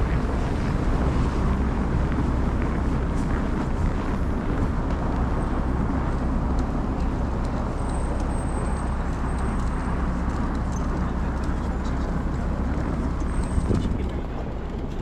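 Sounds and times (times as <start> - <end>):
blizzard wind noise: 0.0 - 15.0.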